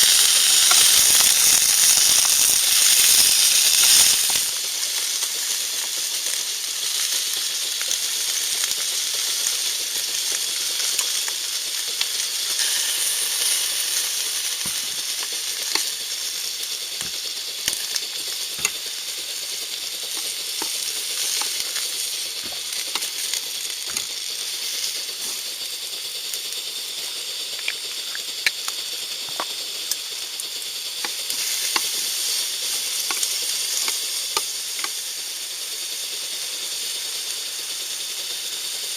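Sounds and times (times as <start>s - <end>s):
food sizzling in a pan: 0.0s - 38.9s
sharp popping of frying food: 0.0s - 38.9s.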